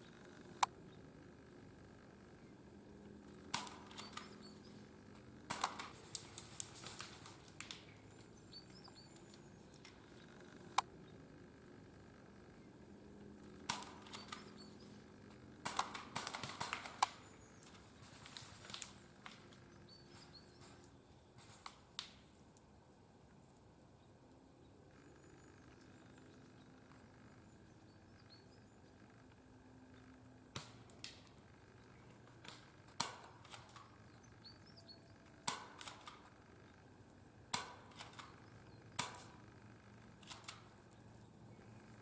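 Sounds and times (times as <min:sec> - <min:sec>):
sharp clicks: 0:00.0 - 0:00.8, 0:03.0 - 0:10.9, 0:13.1 - 0:22.2, 0:30.0 - 0:36.8, 0:37.5 - 0:42.0
faint bird chirps: 0:03.9 - 0:05.0, 0:07.9 - 0:11.3, 0:14.0 - 0:15.1, 0:24.0 - 0:30.3, 0:34.0 - 0:35.4
rustling: 0:05.7 - 0:08.4.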